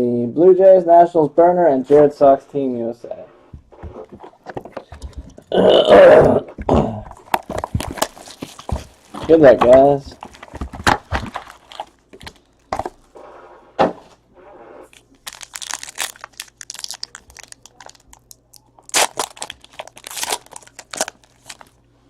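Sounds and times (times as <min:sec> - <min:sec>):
wrapper crinkling and tearing: 0:07.2 - 0:12.6, 0:14.9 - 0:21.8.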